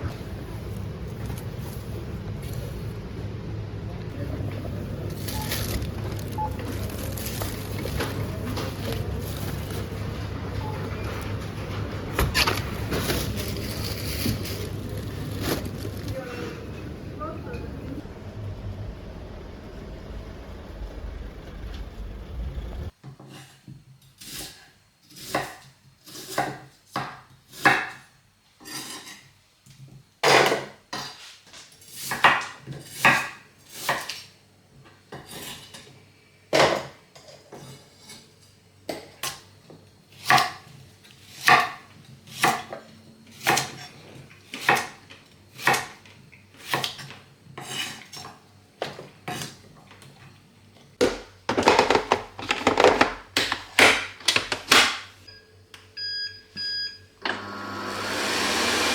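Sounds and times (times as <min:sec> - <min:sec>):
hard objects clattering: 0:05.1 - 0:17.8, 0:51.0 - 0:54.8.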